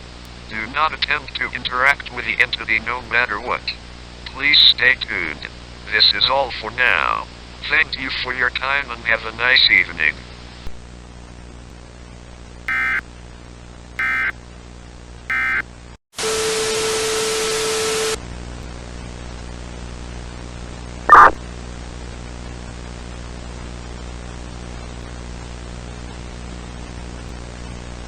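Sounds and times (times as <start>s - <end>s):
broadcast static and hum: 12.7s - 13.0s, 14.0s - 14.3s, 15.3s - 15.6s, 21.1s - 21.4s
loud blip: 12.7s - 13.0s, 21.1s - 21.4s
loud static with low tone: 12.7s - 13.0s, 14.0s - 14.3s, 15.3s - 15.6s, 20.0s - 21.4s
screechy data tone bursts: 12.7s - 13.0s, 14.0s - 14.3s, 15.3s - 15.6s, 21.1s - 21.4s.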